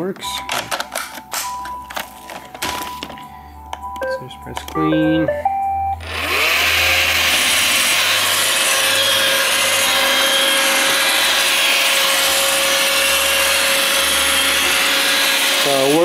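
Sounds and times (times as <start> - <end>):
robot vacuum motor whine: 6.0 - 16.0.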